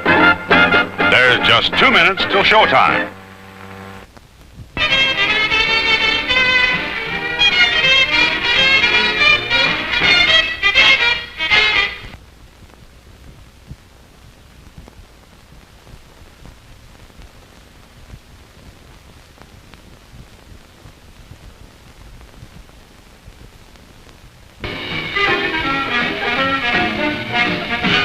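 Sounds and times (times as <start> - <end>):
upbeat swing music: 0.0 - 4.0, 4.8 - 12.2, 24.6 - 28.0
soundtrack hiss with crackles: 0.0 - 28.0.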